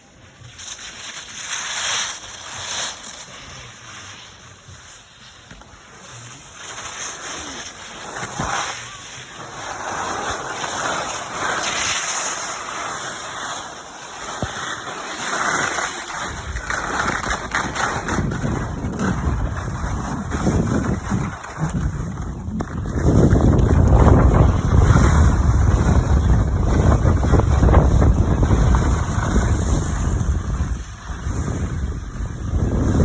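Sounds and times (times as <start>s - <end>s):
skis scraping over snow: 0.0s - 33.0s
wind rumbling on microphone: 16.3s - 33.0s.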